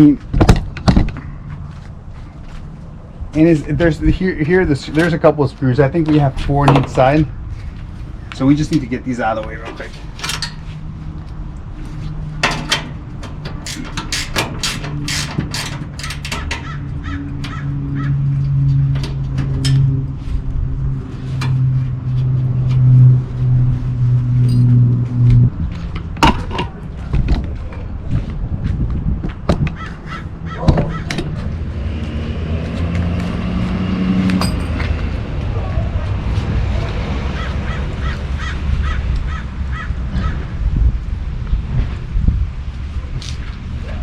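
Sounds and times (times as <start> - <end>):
wrench metallic clicks and knocks: 12.4 - 16.7, 34.4 - 35.0
crows cawing: 16.6 - 18.2, 29.8 - 31.1, 37.4 - 40.4
metallic clinks of hand tools: 24.4 - 24.8, 34.4 - 35.0.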